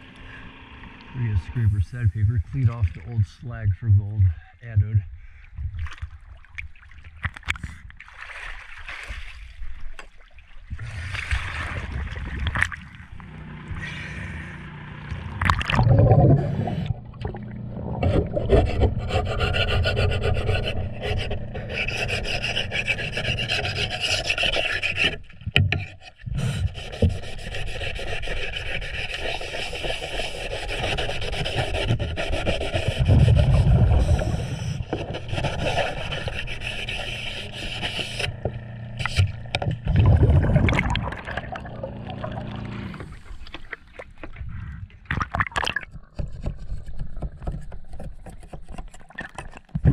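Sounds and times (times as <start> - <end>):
low rumbles: 0.0 - 6.3, 10.7 - 23.9, 33.0 - 45.4
scraper scraping metal underwater: 10.7 - 49.9.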